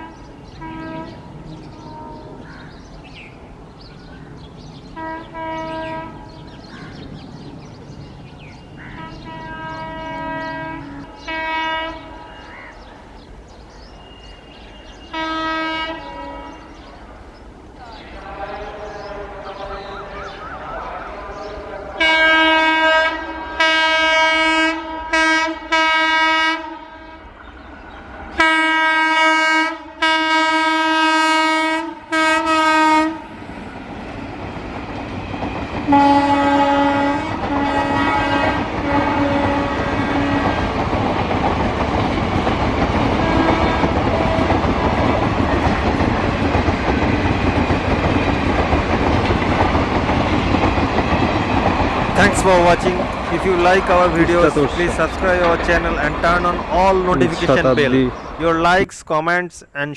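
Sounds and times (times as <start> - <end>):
locomotive twin-tone horn blasts: 0.0 - 2.4, 5.0 - 6.3, 9.0 - 12.6, 14.0 - 16.8, 18.1 - 27.4, 28.4 - 33.4, 35.9 - 40.8, 43.1 - 44.7
train rumble and wheel clatter: 0.0 - 58.9.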